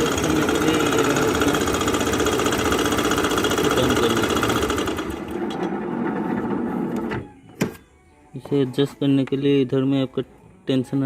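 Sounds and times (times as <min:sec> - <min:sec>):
scooter engine ticking rattle: 0:00.0 - 0:05.0.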